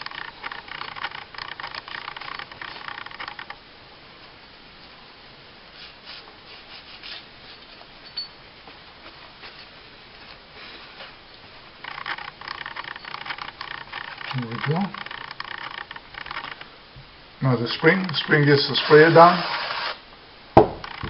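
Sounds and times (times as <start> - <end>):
cloth rubbing metal: 5.7 - 7.7.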